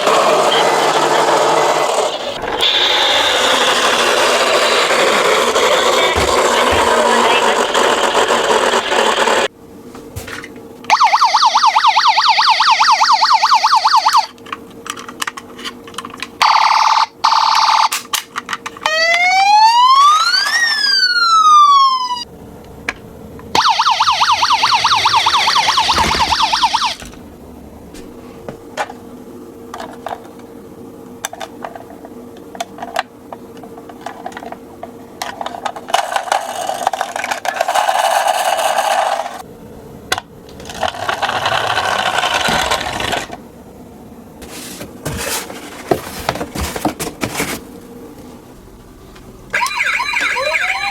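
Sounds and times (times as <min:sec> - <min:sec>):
rough noisy sound: 0:00.0 - 0:09.5
toy electronic siren: 0:10.9 - 0:14.3, 0:16.4 - 0:17.9, 0:18.8 - 0:22.3, 0:23.6 - 0:27.0, 0:49.5 - 0:50.9.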